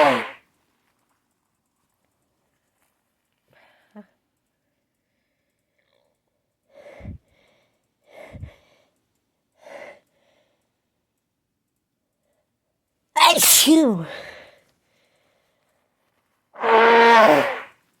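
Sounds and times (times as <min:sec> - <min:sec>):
person gasping before sneeze: 0:13.2 - 0:14.4.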